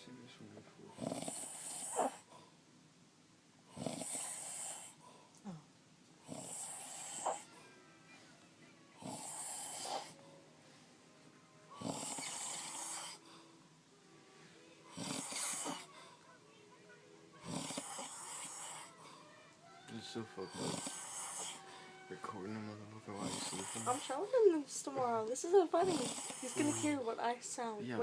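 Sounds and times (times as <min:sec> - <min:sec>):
man snoring: 0:01.0 - 0:02.3, 0:03.7 - 0:05.0, 0:06.2 - 0:07.5, 0:09.0 - 0:10.2, 0:11.8 - 0:13.2, 0:14.9 - 0:15.9, 0:17.4 - 0:19.0, 0:20.4 - 0:22.4, 0:23.1 - 0:24.2, 0:25.8 - 0:27.0.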